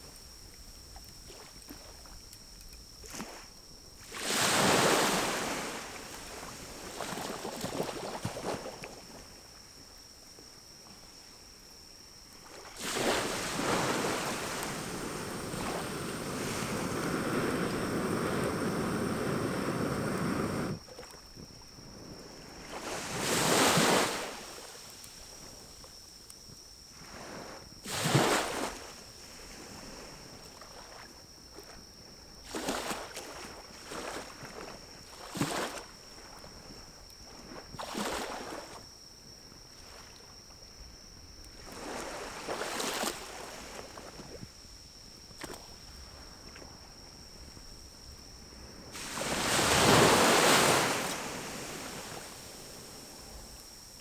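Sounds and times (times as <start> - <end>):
fire rushing with bellows: 13.1 - 20.8
fire crackling: 13.2 - 20.8
fire whooshes: 13.3 - 20.8.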